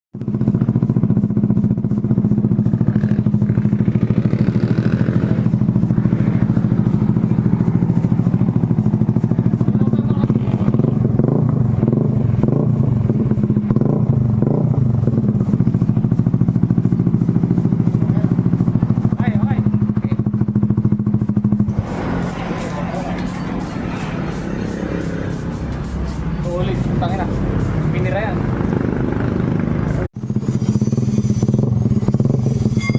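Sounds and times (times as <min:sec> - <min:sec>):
motorcycle idling: 0:00.2 - 0:32.9.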